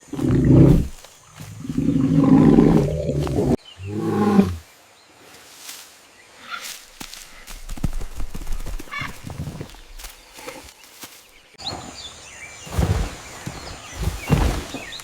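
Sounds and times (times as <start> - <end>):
loud low animal roars: 1.6 - 4.6.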